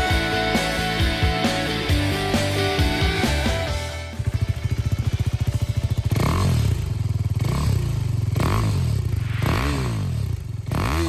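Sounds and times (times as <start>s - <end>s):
motorcycle engine revving: 0.1s - 11.0s.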